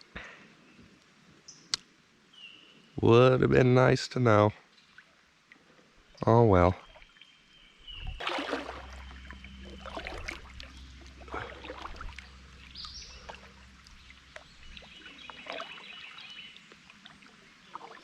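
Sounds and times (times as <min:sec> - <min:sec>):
water trickling and splashing: 0:04.6 - 0:18.0
steady low hum: 0:08.0 - 0:17.4.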